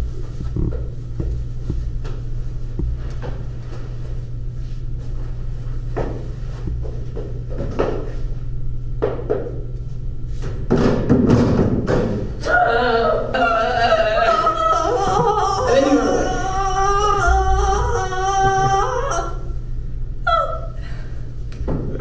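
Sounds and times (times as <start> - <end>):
steady low hum: 0.0 - 22.0
knocks and thuds: 10.6 - 12.3
person singing: 12.5 - 19.5.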